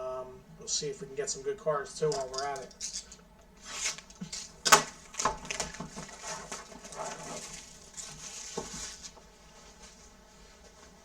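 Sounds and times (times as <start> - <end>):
packaging crinkling and rustling: 2.1 - 9.2.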